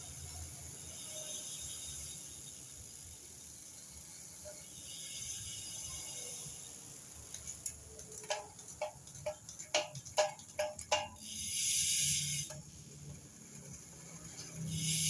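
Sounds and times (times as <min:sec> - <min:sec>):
high hiss: 0:11.2 - 0:13.0, 0:14.5 - 0:15.0.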